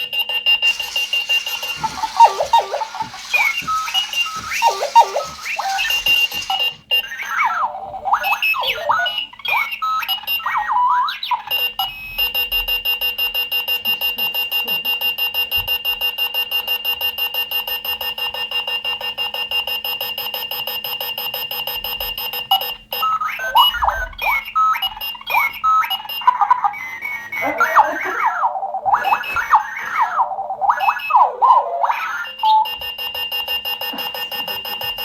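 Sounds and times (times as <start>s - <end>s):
fast electronic beeping: 0.0s - 7.1s, 32.6s - 35.0s
alarm clock warbling chirps: 0.0s - 9.2s, 21.2s - 35.0s.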